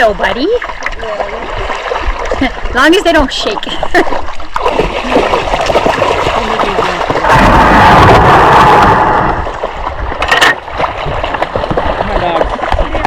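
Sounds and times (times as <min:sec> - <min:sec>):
sharp water splashes: 0:00.0 - 0:13.0
water splashing around kayak: 0:00.0 - 0:13.0.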